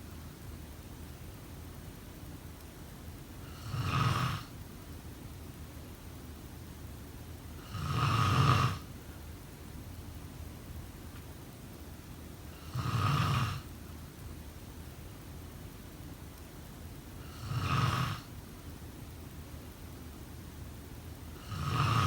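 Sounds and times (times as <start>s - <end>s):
person snoring: 7.7s - 8.8s, 21.4s - 22.0s.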